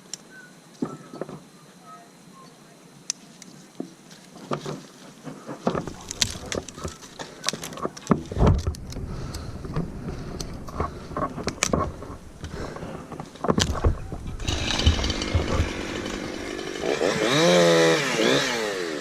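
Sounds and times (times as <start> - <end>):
handling knocks and scrapes: 4.3 - 17.3.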